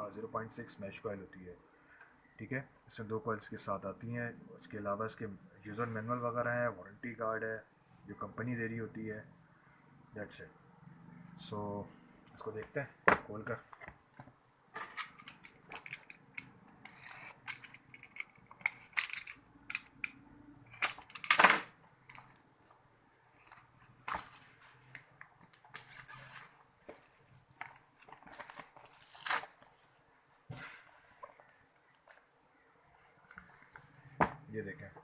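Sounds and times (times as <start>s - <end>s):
packaging rustling: 21.8s - 32.3s
packaging scraping: 25.4s - 30.0s
packaging tearing: 25.4s - 30.0s.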